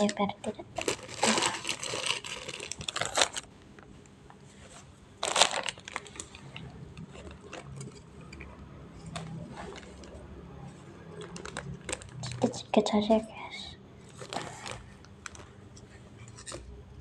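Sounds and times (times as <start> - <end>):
balloon rustling and crinkling: 0.0 - 8.2, 9.0 - 10.2, 11.0 - 12.6, 14.1 - 15.6.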